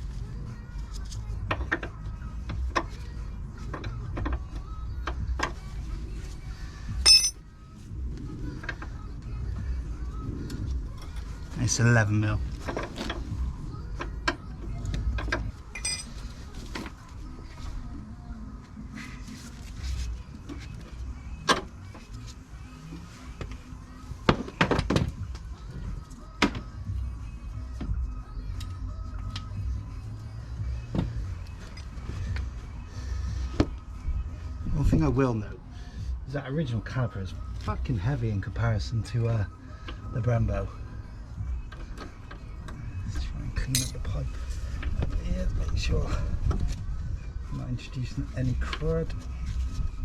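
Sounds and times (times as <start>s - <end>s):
metal spanners clinking: 7.1s - 7.4s, 15.8s - 16.2s.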